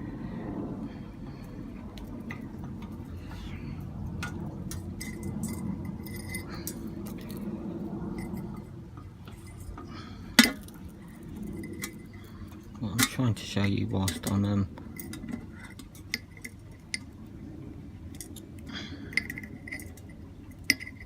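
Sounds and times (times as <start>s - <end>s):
low background hum: 0.0s - 21.0s
small metal clicks and clinks: 4.2s - 7.5s, 18.1s - 21.0s.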